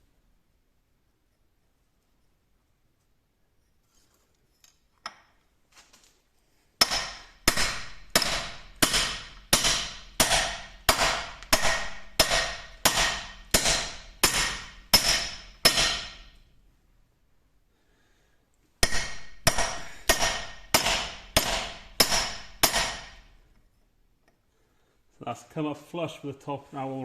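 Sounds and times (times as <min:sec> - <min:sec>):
hammer striking metal tube: 0:06.8 - 0:16.4, 0:18.8 - 0:23.3.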